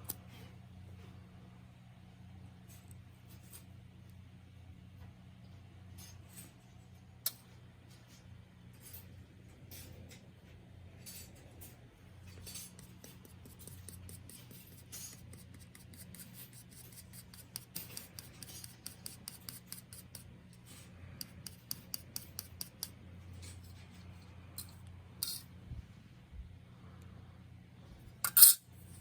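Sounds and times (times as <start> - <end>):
faint steady hum: 0.0 - 29.0
metallic snips and clicks: 24.6 - 25.4, 28.2 - 28.6.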